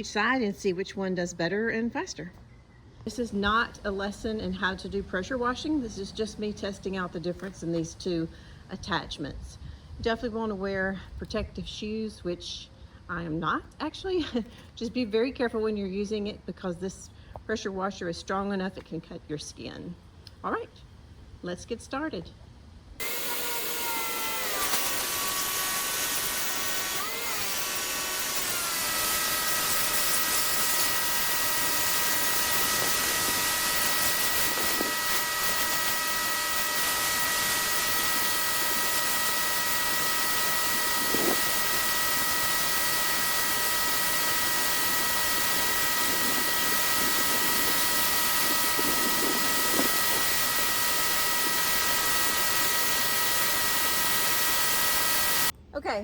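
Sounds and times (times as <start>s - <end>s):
pressure washer motor whine: 23.0s - 55.5s.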